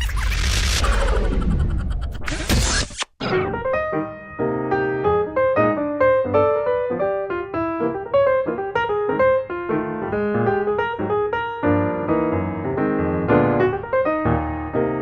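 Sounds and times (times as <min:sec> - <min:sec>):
piano music: 0:03.2 - 0:15.0.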